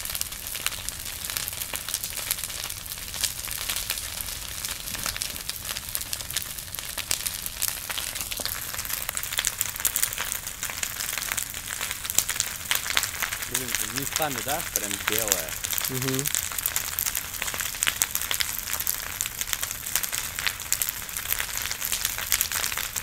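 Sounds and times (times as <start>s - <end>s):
bonfire crackling and popping: 0.0s - 23.0s.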